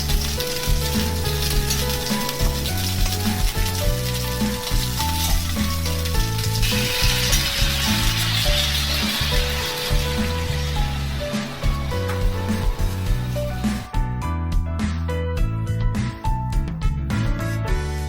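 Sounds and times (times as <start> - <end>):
food sizzling in a pan: 0.0 - 13.9
background music with beat: 0.0 - 18.0.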